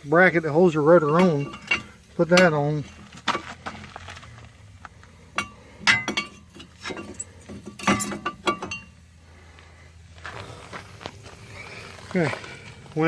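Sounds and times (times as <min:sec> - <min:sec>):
metal clinks and knocks: 0:01.0 - 0:04.4, 0:05.3 - 0:09.0.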